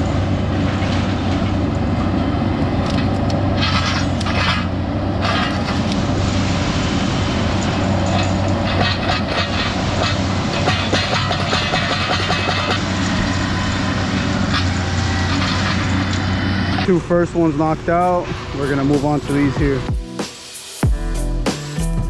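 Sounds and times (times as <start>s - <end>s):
machine engine under load: 0.0s - 19.9s
branches crackling and scraping: 0.2s - 11.6s.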